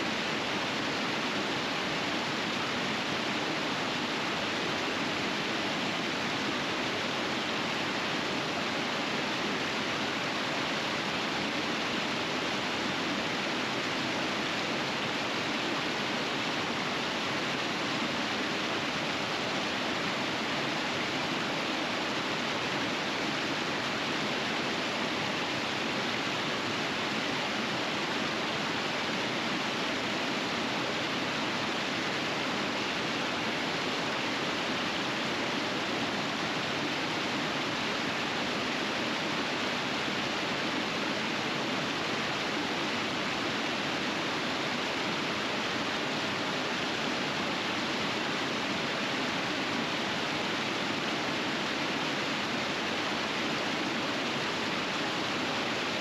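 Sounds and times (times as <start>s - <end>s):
river rushing over rapids: 0.0s - 56.0s.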